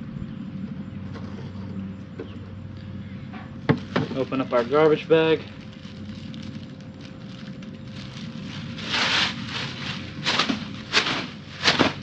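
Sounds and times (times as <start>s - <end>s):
plastic bag rustling and crinkling: 3.7s - 12.0s.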